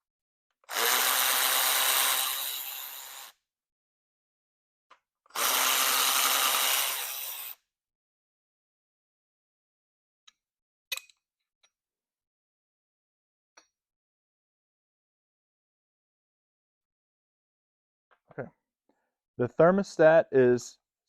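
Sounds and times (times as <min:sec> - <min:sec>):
power tool running: 0:00.7 - 0:03.3, 0:05.3 - 0:07.6.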